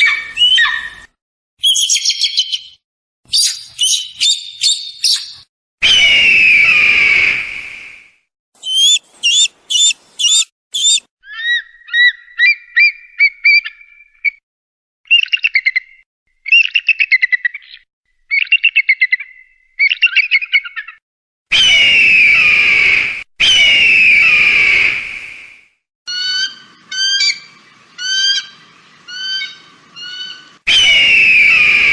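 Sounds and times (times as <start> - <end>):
high rising bird whistles: 0.0 - 2.7, 3.3 - 7.8, 8.6 - 11.1, 28.0 - 31.9
harsh descending bird screams: 5.8 - 7.5, 8.6 - 11.6, 21.5 - 25.1, 29.1 - 31.9
short piping bird notes: 8.6 - 11.1
chattering bird trills: 8.6 - 12.3.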